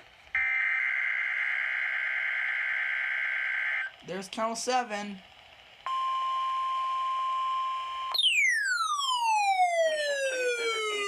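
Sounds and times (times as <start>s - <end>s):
falling electronic pitch sweep: 8.1s - 11.0s.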